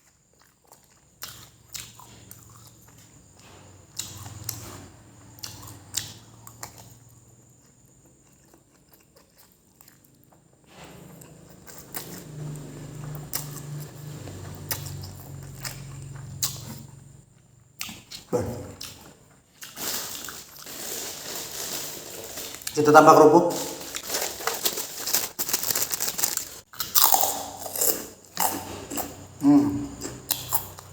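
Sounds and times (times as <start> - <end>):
chewing noodles: 0.0 - 22.9, 23.5 - 30.9.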